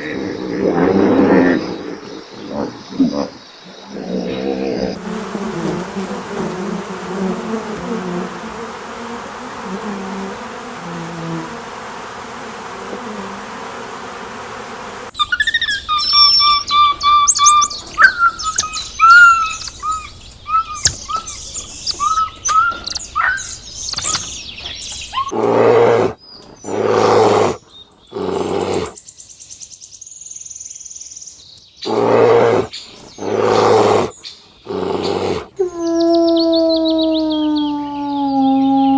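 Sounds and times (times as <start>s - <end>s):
low animal call: 0.0s - 5.3s, 31.8s - 38.9s
small birds chirping rapidly: 0.0s - 25.3s, 26.1s - 38.8s
loud animal calls: 15.1s - 24.2s, 25.1s - 29.0s, 31.8s - 38.9s.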